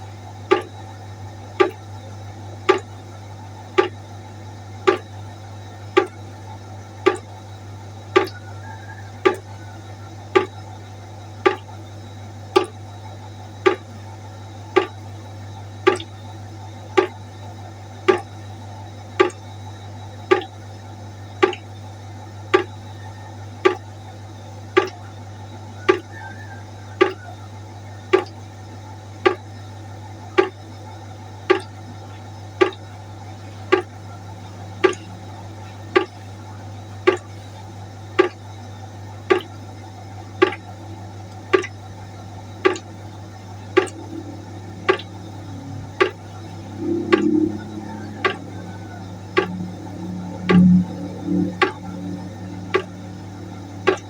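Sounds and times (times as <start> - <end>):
steady low hum: 0.0 - 54.0
water drips plinking into pot: 0.5 - 0.8, 1.6 - 1.9, 2.7 - 2.9, 3.8 - 4.0, 4.9 - 5.2, 6.0 - 6.2, 7.0 - 7.4, 8.2 - 8.5, 9.2 - 9.6, 10.4 - 10.6, 11.4 - 11.7, 12.6 - 12.8, 13.6 - 14.0, 14.8 - 15.1, 15.8 - 16.1, 17.0 - 17.2, 18.1 - 18.4, 19.2 - 19.5, 20.3 - 20.7, 21.4 - 21.7, 22.5 - 22.8, 23.6 - 23.9, 24.8 - 25.0, 25.8 - 27.4, 28.0 - 28.4, 29.2 - 29.5, 30.4 - 30.6, 31.5 - 31.8, 32.6 - 32.9, 33.7 - 36.3, 37.1 - 37.4, 38.2 - 38.4, 39.3 - 39.6, 40.4 - 54.0.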